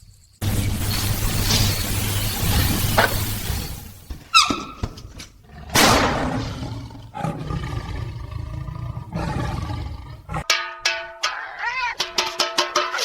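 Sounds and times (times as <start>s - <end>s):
animal harsh roar: 5.4s - 10.5s
animal falling cry: 11.2s - 12.1s.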